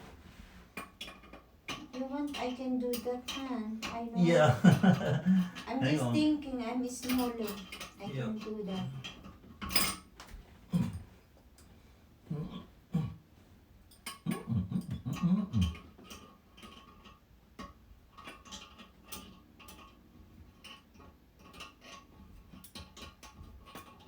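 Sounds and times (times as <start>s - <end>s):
small clicks of metal parts: 0.8s - 4.0s, 7.0s - 11.8s, 13.9s - 15.0s, 15.7s - 24.0s
faint steady hum: 1.6s - 15.9s
low murmured voice: 10.7s - 11.0s, 12.3s - 13.2s.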